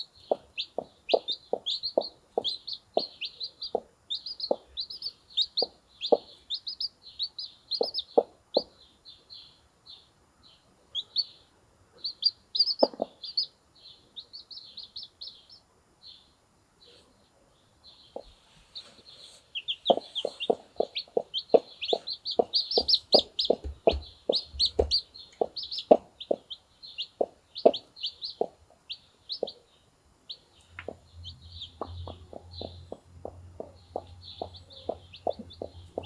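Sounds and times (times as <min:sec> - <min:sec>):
hen clucking: 0:00.0 - 0:08.8, 0:12.0 - 0:13.5, 0:18.0 - 0:29.7, 0:30.3 - 0:36.0
chicks peeping: 0:00.0 - 0:36.0.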